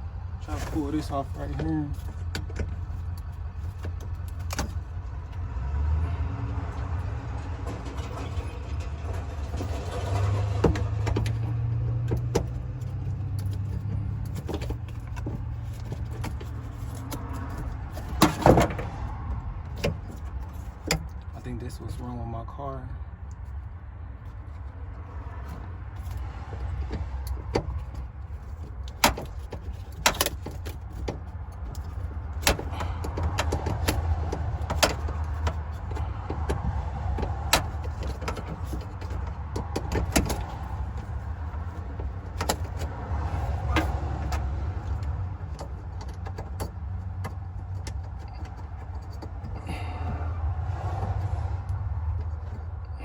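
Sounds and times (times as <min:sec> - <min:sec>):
hand tools clicking and knocking: 0:07.7 - 0:21.4, 0:24.9 - 0:52.9.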